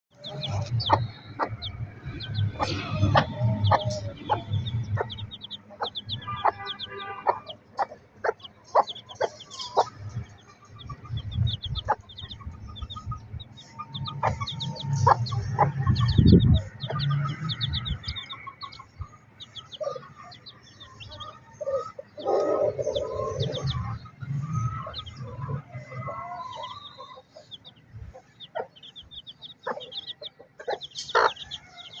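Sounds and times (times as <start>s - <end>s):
chicks peeping: 0.1s - 32.0s
hens clucking: 0.1s - 32.0s
low rumble: 0.2s - 6.2s, 9.8s - 18.7s.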